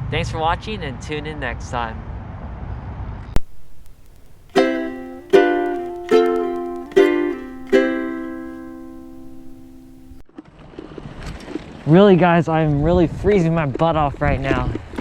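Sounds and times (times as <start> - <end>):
plucked string instrument chords: 3.4 - 10.2.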